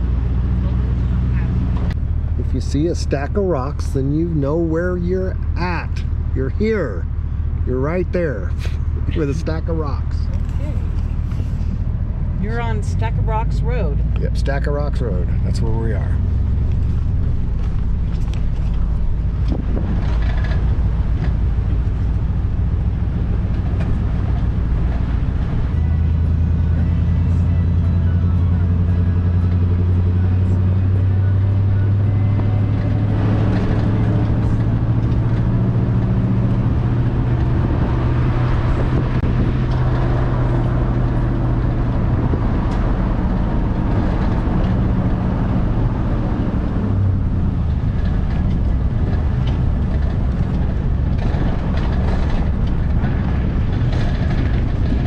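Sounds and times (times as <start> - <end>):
truck engine low note: 0.0 - 55.0
tyre road noise: 0.0 - 55.0
knocks and rattles: 17.2 - 22.1, 47.6 - 55.0.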